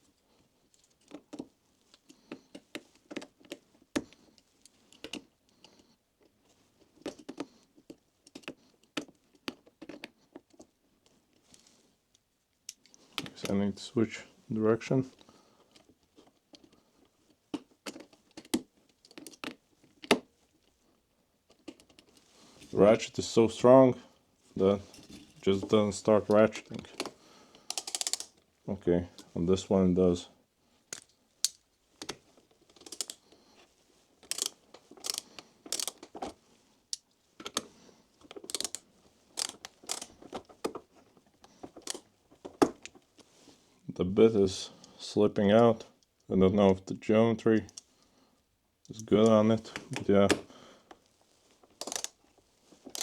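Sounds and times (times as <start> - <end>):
ratcheting screwdriver clicks: 27.7 - 28.3, 32.8 - 33.2, 34.2 - 36.0, 38.4 - 38.8, 39.4 - 40.1, 51.8 - 52.2.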